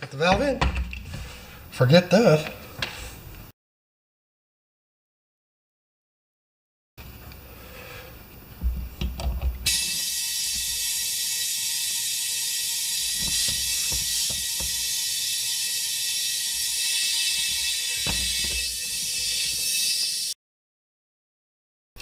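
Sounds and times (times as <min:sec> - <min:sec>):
compressed air hissing: 0:09.6 - 0:20.3
thumps: 0:13.2 - 0:14.8.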